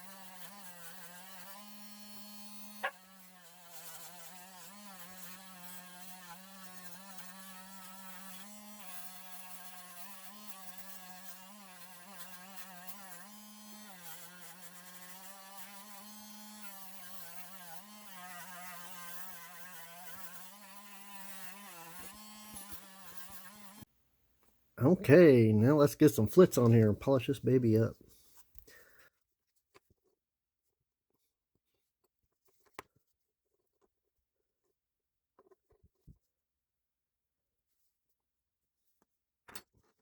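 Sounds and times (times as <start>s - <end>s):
rotary tool buzzing whine: 0.0s - 23.9s.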